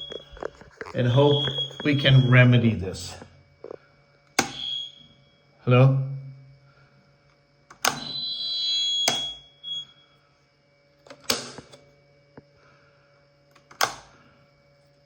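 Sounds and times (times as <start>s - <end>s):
high ringing tone: 0.0s - 3.8s, 4.4s - 5.9s, 7.9s - 10.3s.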